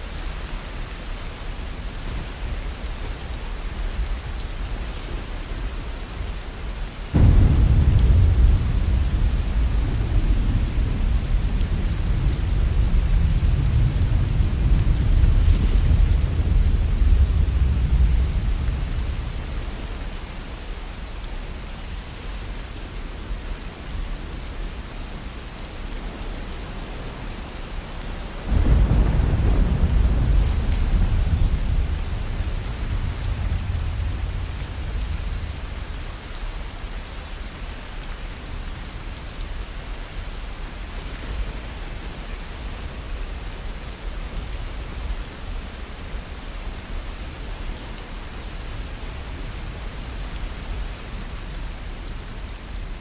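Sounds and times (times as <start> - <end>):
heavy rain falling: 0.0 - 53.0
thunder rumbling: 7.1 - 19.8, 28.4 - 36.1.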